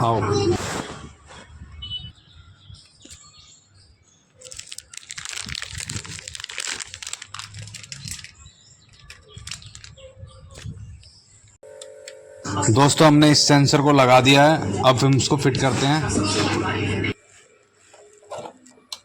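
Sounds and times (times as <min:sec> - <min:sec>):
plastic crinkling and rustling: 0:04.4 - 0:10.8.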